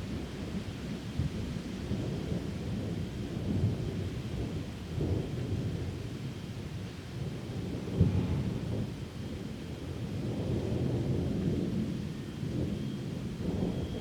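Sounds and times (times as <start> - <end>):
thunder rumbling: 7.4 - 11.5.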